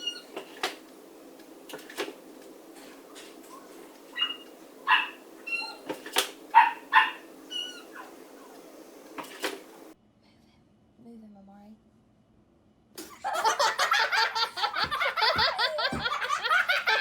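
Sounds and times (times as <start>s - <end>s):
dog yipping and barking: 0.0s - 0.4s, 3.1s - 8.7s.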